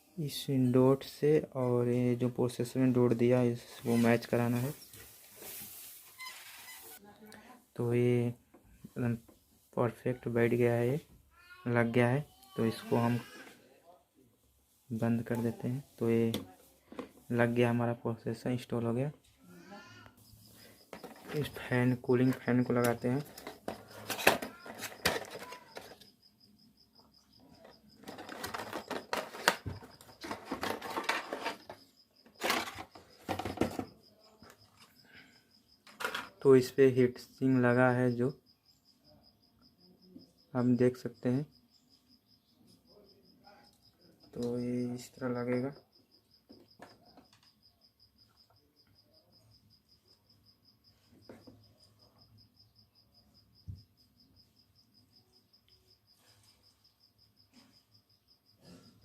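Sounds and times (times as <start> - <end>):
insect chirping trill: 2.7 - 7.0, 18.9 - 59.0
plastic and metal clicks and rattles: 22.2 - 26.1, 27.5 - 31.8.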